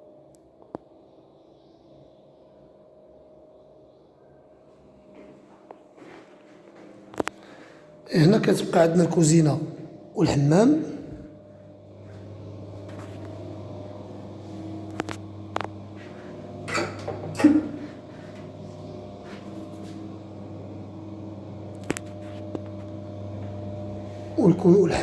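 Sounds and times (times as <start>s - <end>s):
steady low hum: 3.6s - 25.0s.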